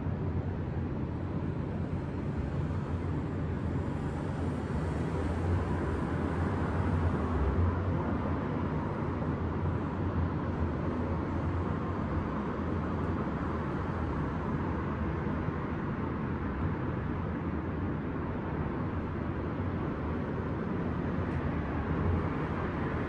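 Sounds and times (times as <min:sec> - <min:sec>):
distant city traffic: 0:00.0 - 0:23.0.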